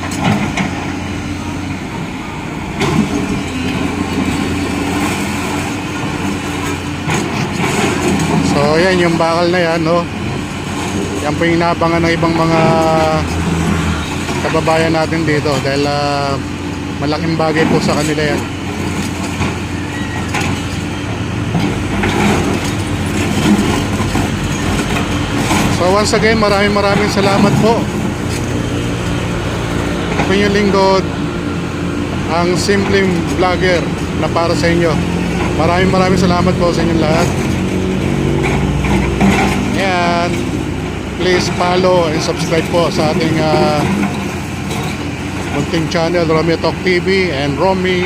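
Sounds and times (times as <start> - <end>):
engine running steadily: 0.0 - 48.0
clatter and knocks: 6.7 - 8.9, 17.6 - 28.5, 37.0 - 40.6, 41.4 - 46.0.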